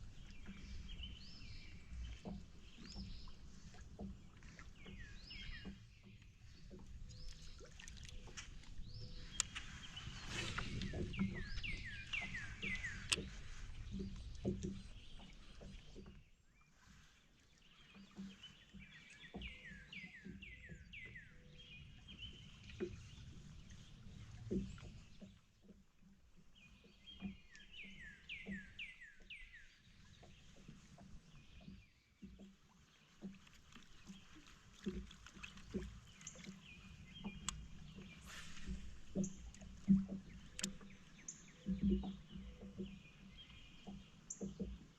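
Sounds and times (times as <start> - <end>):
songbird singing: 0.0 - 16.2, 17.6 - 25.4, 26.4 - 44.9.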